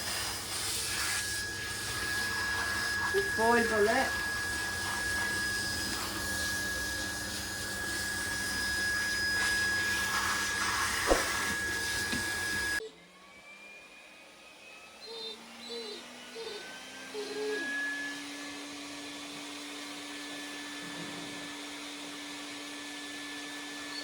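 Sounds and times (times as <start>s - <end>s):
electric motor running with whine: 0.0s - 12.8s.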